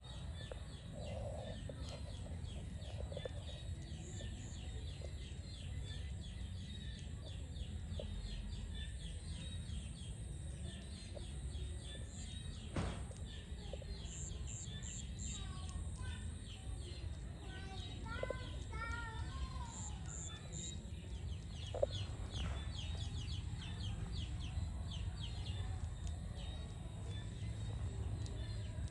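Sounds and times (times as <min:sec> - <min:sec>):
birds calling: 0:00.2 - 0:28.9.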